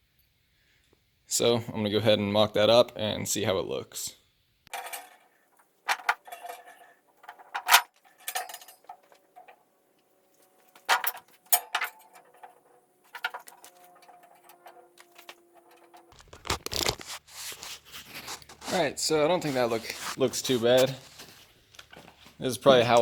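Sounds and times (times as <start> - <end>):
steel tubing clanking: 4.7 - 9.6, 10.8 - 16.3.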